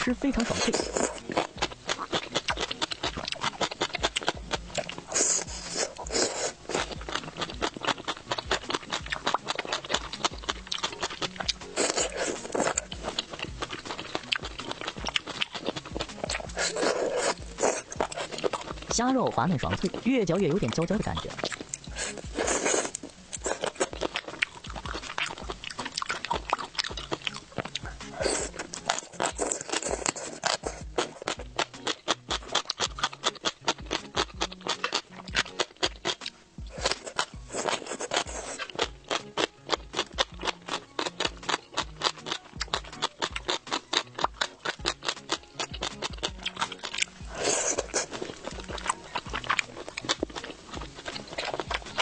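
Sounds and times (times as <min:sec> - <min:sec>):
close chewing and crunching: 0:00.0 - 0:52.0
soft background music: 0:00.0 - 0:52.0
mouth smacking: 0:21.2 - 0:52.0.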